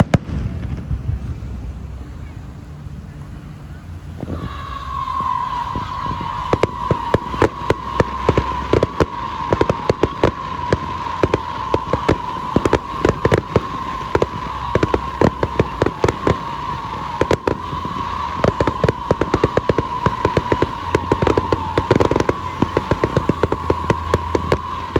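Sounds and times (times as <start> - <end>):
fireworks bangs and crackles: 0.0 - 24.9.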